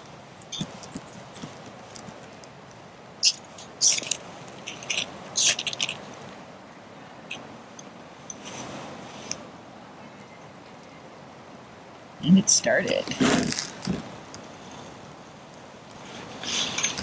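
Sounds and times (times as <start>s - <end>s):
fire striker hissing scrapes: 16.0s - 17.0s.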